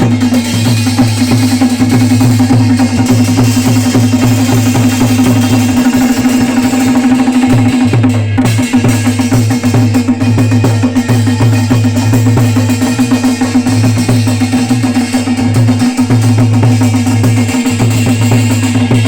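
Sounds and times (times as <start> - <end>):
drums beaten fast: 0.0 - 19.0.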